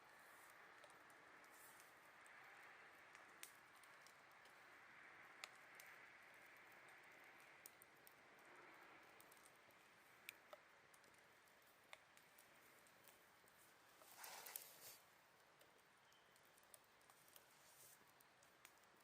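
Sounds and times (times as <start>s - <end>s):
burning wood popping: 0.0s - 19.0s
campfire crackling: 0.0s - 19.0s.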